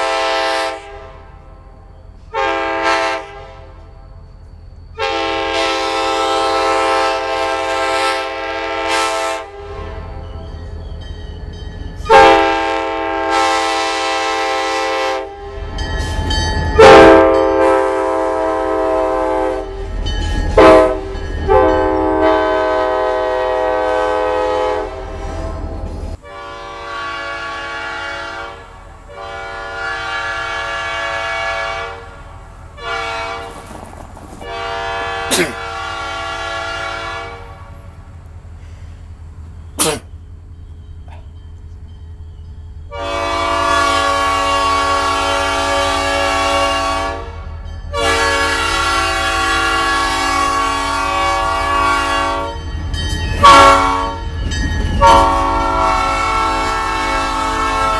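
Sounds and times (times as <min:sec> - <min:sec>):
locomotive air horn blasts: 0:00.0 - 0:01.5, 0:02.3 - 0:04.2, 0:05.0 - 0:10.2, 0:12.0 - 0:15.8, 0:16.7 - 0:19.9, 0:20.6 - 0:32.2, 0:32.8 - 0:33.6, 0:34.4 - 0:37.7, 0:42.9 - 0:52.6, 0:53.4 - 0:54.4, 0:55.0 - 0:57.9.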